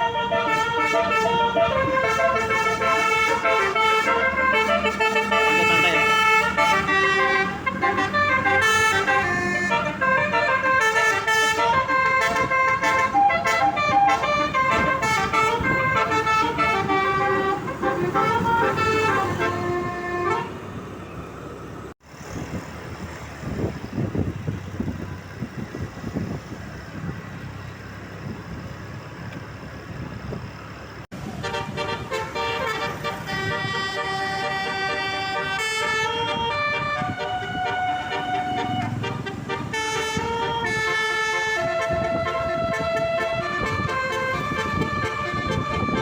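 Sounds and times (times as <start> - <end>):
bus melody horn: 0.0 - 21.3, 31.2 - 46.0
low engine and road rumble: 0.0 - 46.0.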